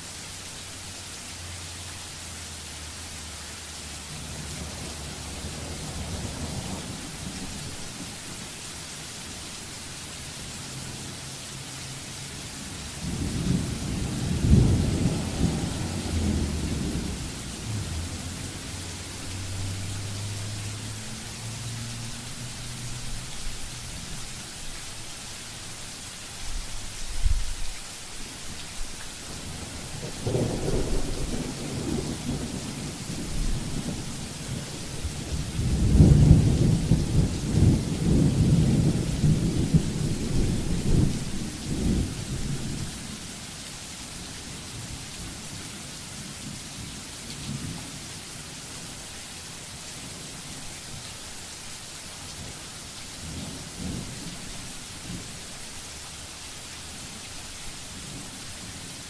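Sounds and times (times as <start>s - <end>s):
rain hiss: 0.0s - 59.0s
rolling thunder: 12.9s - 18.7s, 29.3s - 42.9s.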